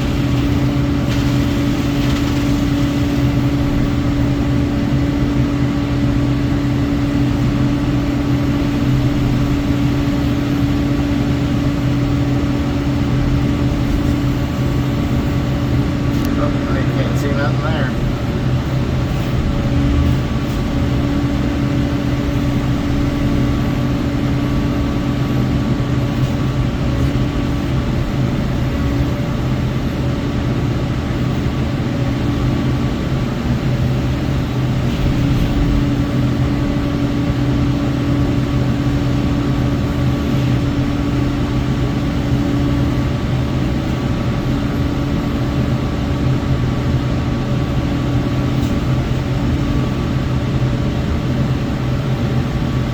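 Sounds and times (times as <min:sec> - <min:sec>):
high steady mulcher tone: 0:00.0 - 0:24.7
excavator engine and hydraulic hum: 0:00.0 - 0:52.9.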